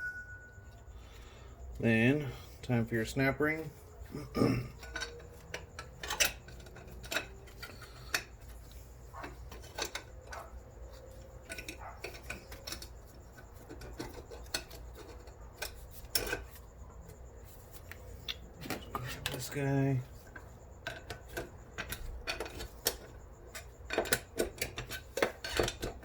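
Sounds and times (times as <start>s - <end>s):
light metal scraping: 0.0s - 26.0s
sharp metal clicks: 4.7s - 17.3s.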